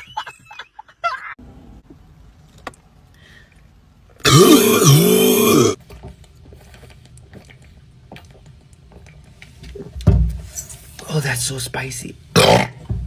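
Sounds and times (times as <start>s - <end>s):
person burping: 4.2s - 5.8s, 12.4s - 12.9s.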